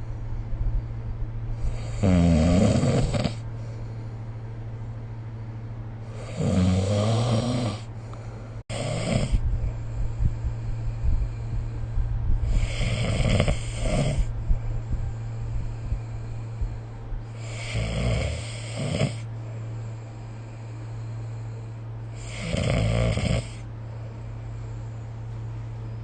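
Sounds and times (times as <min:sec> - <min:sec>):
steady low hum: 0:00.0 - 0:26.0
person snoring: 0:01.6 - 0:03.4, 0:06.1 - 0:07.9, 0:08.7 - 0:09.4, 0:12.4 - 0:14.3, 0:17.3 - 0:23.7.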